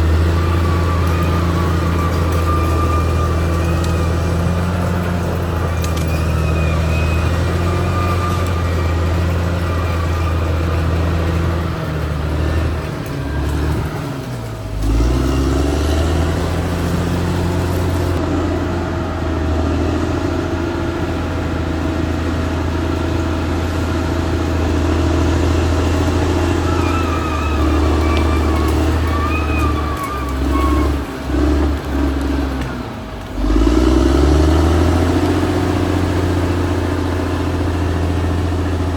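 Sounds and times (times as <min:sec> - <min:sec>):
high squeal: 0:00.0 - 0:18.2, 0:25.6 - 0:32.0
bulldozer diesel engine: 0:00.0 - 0:38.9.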